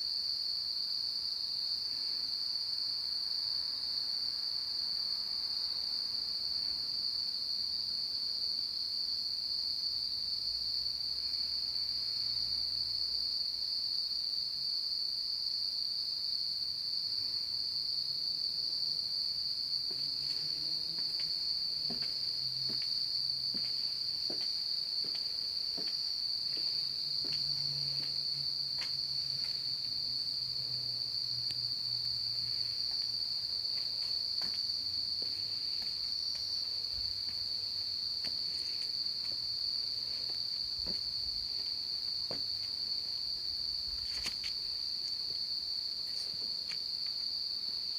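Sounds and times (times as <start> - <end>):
insects trilling: 19.5 - 47.9.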